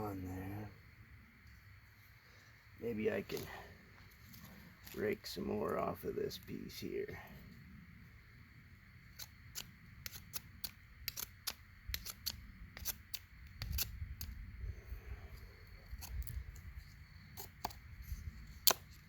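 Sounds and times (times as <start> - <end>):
blade scraping wood: 9.2 - 13.9.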